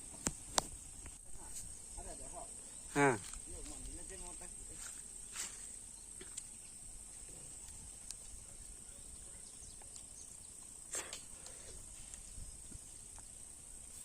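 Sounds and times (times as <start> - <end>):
insects droning: 0.0 - 14.0
faint clicks: 9.7 - 12.3.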